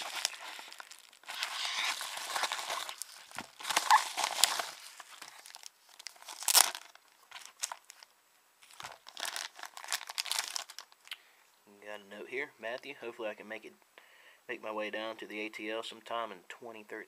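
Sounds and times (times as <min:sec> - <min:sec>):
packaging tearing and rustling: 0:00.0 - 0:11.0
packaging crackling: 0:00.0 - 0:11.1.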